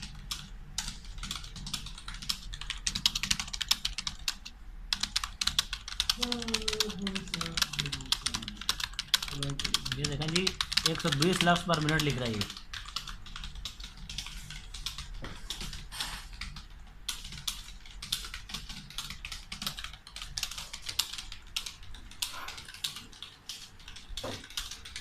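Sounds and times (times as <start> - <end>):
fast typing on keyboard: 0.0 - 25.0.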